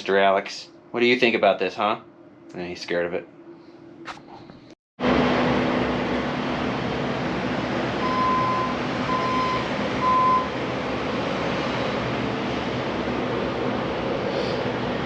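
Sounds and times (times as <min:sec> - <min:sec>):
steady loud hum: 0:00.0 - 0:15.0
reversing alarm beeping: 0:08.0 - 0:10.6.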